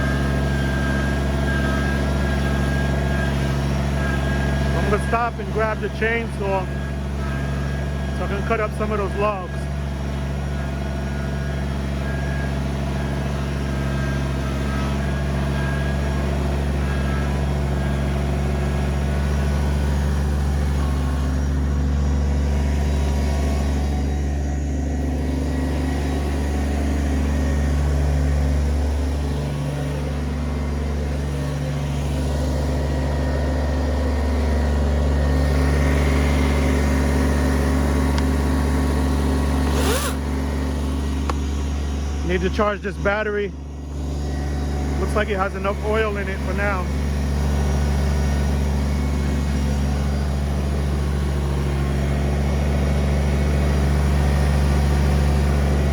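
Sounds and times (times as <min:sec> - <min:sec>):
tractor diesel engine running: 0:00.0 - 0:55.9
short rising whine: 0:39.1 - 0:43.2.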